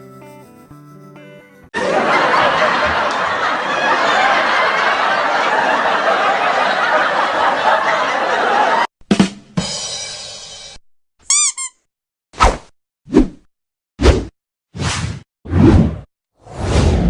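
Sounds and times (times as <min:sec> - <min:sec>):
loud crowd noise: 0:01.8 - 0:08.9.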